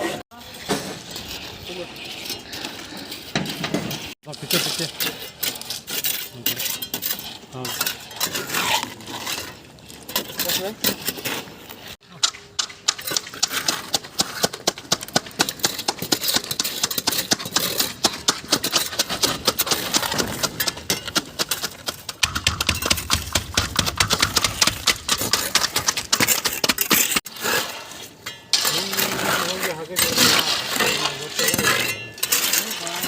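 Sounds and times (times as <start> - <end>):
clattering and knocking: 12.2 - 27.3.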